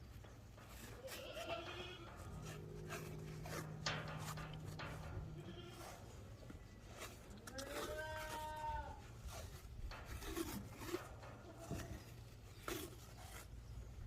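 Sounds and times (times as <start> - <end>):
tape rustling and clicking: 0.1 - 8.6
goat bleating: 0.9 - 3.7, 4.3 - 6.1, 7.4 - 9.1.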